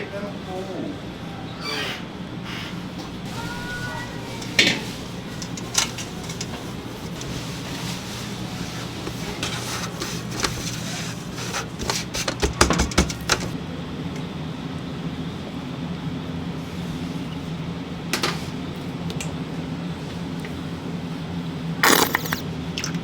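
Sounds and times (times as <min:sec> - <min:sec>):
low machine hum: 0:00.0 - 0:23.0
clattering: 0:04.3 - 0:13.6
knocks: 0:12.2 - 0:13.6.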